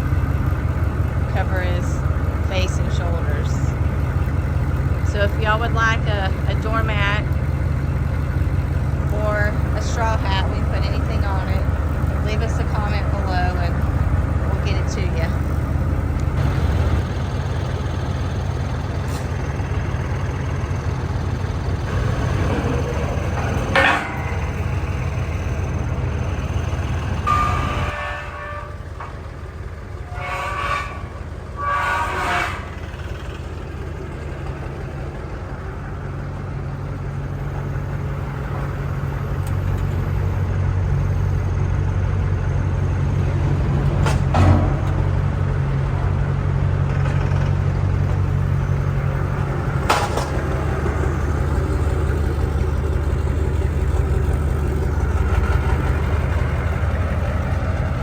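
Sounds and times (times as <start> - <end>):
diesel pickup engine drone: 0.0 - 58.0.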